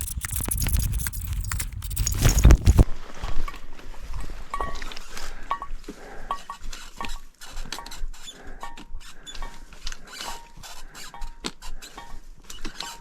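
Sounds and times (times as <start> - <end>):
backpack strap squeak: 0.0 - 2.8.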